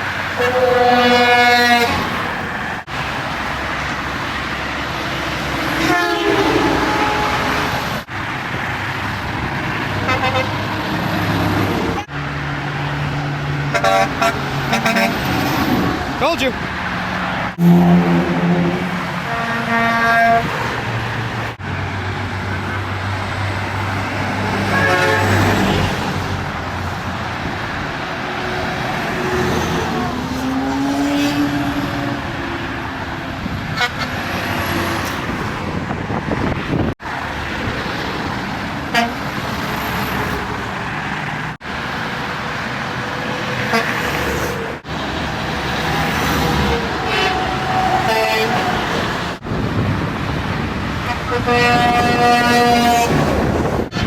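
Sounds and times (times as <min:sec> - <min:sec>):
semi-truck air horns honking: 0:00.0 - 0:02.4, 0:05.6 - 0:08.1, 0:10.0 - 0:10.8, 0:13.6 - 0:16.5, 0:17.6 - 0:20.9, 0:24.4 - 0:26.2, 0:28.5 - 0:32.4, 0:33.6 - 0:35.2, 0:38.8 - 0:40.3, 0:43.6 - 0:44.6, 0:46.0 - 0:49.4, 0:51.0 - 0:54.0
highway traffic noise: 0:00.0 - 0:54.0.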